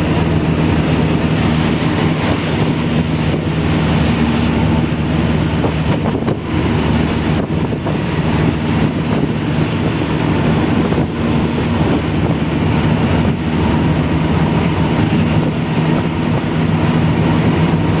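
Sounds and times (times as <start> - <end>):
vehicle engine hum: 0.0 - 18.0
wind and road noise: 0.0 - 18.0.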